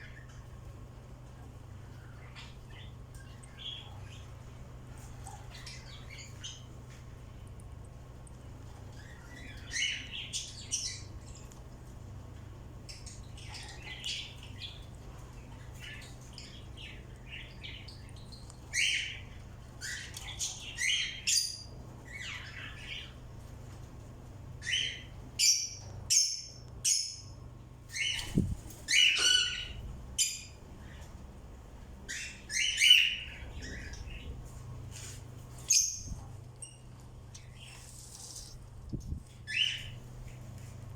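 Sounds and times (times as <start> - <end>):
birds squawking and chirping: 8.8 - 11.5, 12.8 - 23.3, 24.6 - 27.3, 27.9 - 31.2, 32.0 - 36.2, 39.2 - 40.0.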